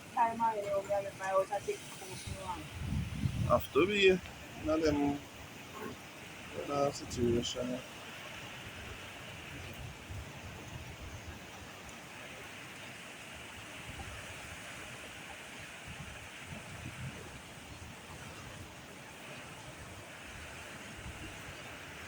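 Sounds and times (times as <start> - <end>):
wind buffeting microphone: 0.0 - 7.5, 8.4 - 12.1, 13.4 - 18.9.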